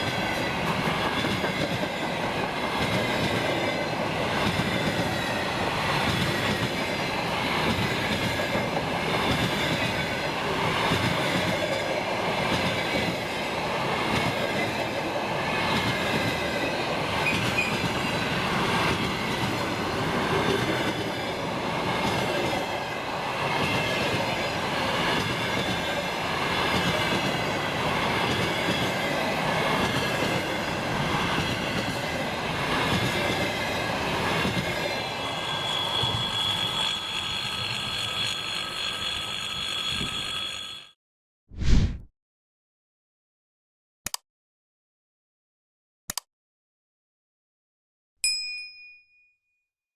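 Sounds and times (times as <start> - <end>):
wheel squeal: 17.2 - 18.2, 35.1 - 41.0.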